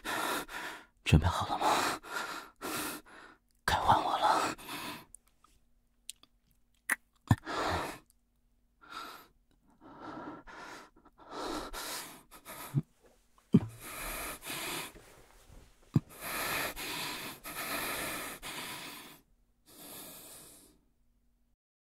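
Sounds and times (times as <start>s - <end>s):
man breathing heavily: 0.0s - 3.4s, 4.0s - 5.2s, 7.4s - 8.2s, 8.8s - 20.8s.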